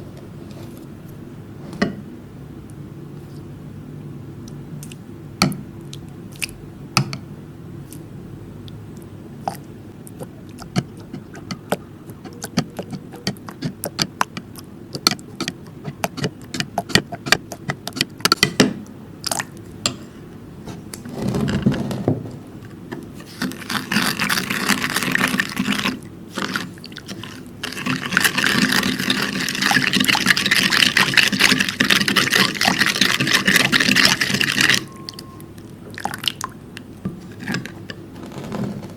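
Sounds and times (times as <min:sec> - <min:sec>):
slime scraping and swishing: 0:20.7 - 0:22.1, 0:23.1 - 0:34.9, 0:37.2 - 0:38.9.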